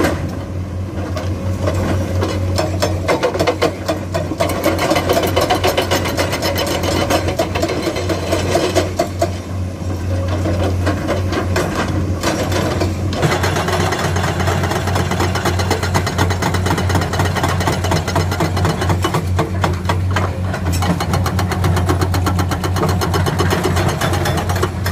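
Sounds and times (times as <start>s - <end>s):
excavator diesel engine running: 0.0s - 24.9s.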